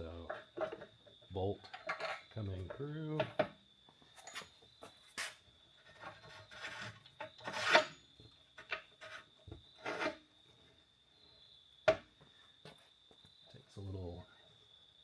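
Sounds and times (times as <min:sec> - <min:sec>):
metal bolt scraping and rubbing: 0:01.6 - 0:02.8, 0:05.2 - 0:10.2.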